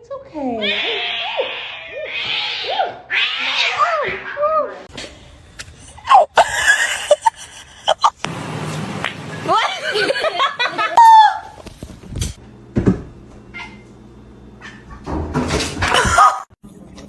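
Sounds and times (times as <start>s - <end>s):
cat meowing: 0.6s - 4.4s.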